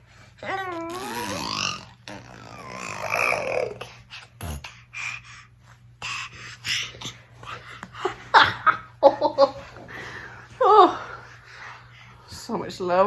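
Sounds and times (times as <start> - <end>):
baby squealing: 0.4 - 3.8
baby grunting and huffing: 0.4 - 8.6.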